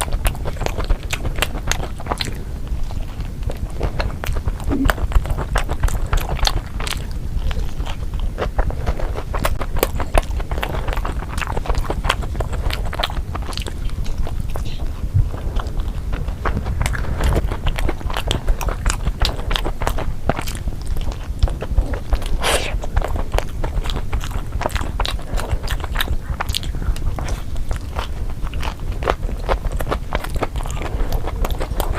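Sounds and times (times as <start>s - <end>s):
chewing crunchy pizza: 0.0s - 31.9s.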